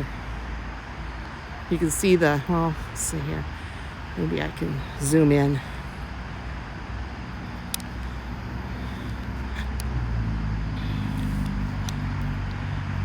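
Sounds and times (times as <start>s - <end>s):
vehicle engine humming: 0.0s - 13.0s
faint clicks: 7.5s - 10.0s.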